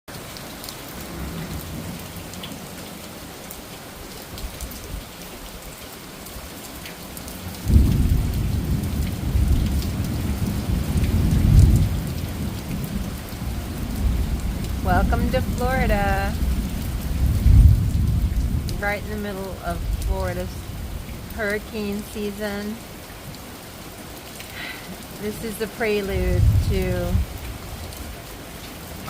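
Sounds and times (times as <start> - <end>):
raindrop ticks: 0.1 - 29.0
steady rain: 0.1 - 29.0
rolling thunder: 7.6 - 18.9, 26.2 - 27.9.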